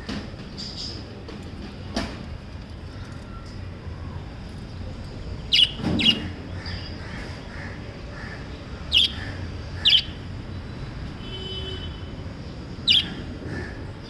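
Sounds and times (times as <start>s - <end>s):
parrots calling: 5.5s - 10.4s, 12.8s - 13.8s.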